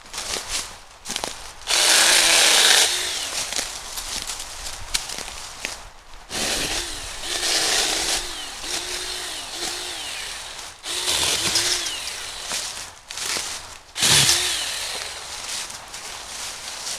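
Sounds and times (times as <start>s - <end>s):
mini chainsaw cutting wood: 1.7s - 3.8s, 6.3s - 15.7s.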